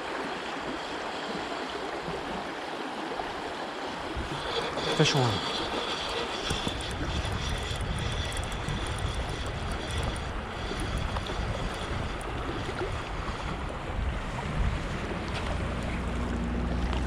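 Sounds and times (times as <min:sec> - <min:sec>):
creek rushing: 0:00.0 - 0:15.7
wind buffeting microphone: 0:04.0 - 0:16.3.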